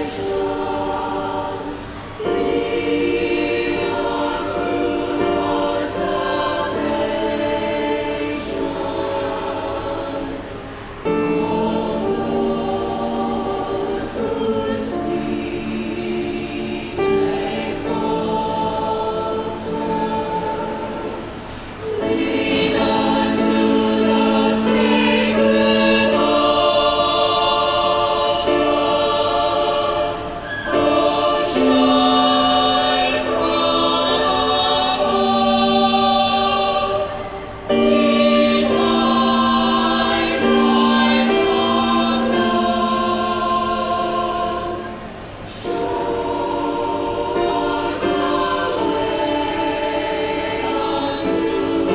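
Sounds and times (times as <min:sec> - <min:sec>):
choir singing: 0:00.0 - 0:51.9.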